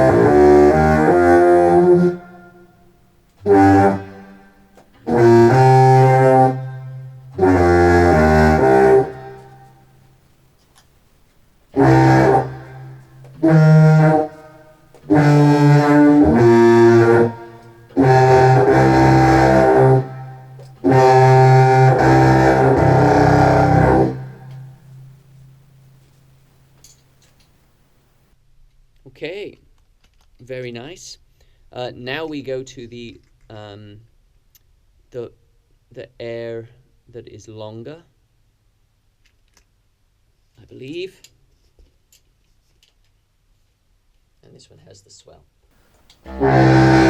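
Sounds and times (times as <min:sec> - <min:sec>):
contrabass clarinet with reverb: 0:00.0 - 0:02.7, 0:03.4 - 0:09.8, 0:11.8 - 0:25.2, 0:46.2 - 0:47.0.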